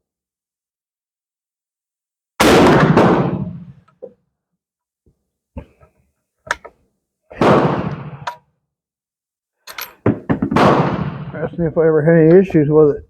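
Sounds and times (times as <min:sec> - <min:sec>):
rifle shots echoing: 0:02.4 - 0:03.7, 0:07.3 - 0:08.3, 0:10.0 - 0:11.4.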